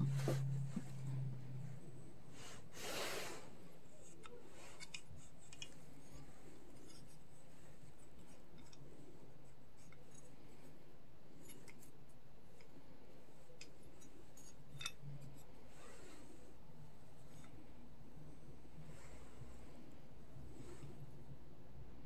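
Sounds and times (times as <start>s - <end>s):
steady low hum: 0.0s - 22.0s
tools and parts clicking: 4.0s - 7.3s, 8.1s - 8.9s, 9.8s - 10.3s, 11.4s - 12.0s, 13.5s - 15.5s.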